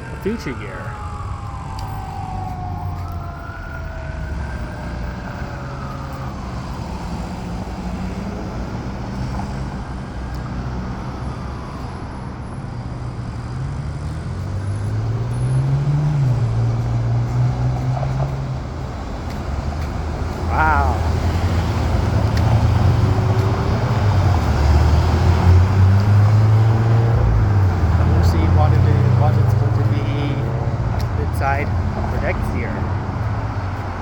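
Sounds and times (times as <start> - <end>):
emergency siren wailing: 0.0 - 34.0
street traffic: 0.0 - 34.0
vehicle engine passing: 13.0 - 34.0.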